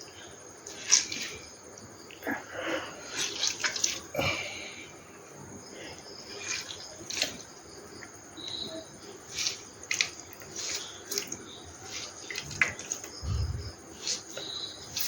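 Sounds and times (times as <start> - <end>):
water dripping and splashing: 0.6 - 1.5, 3.0 - 4.4, 6.3 - 15.0.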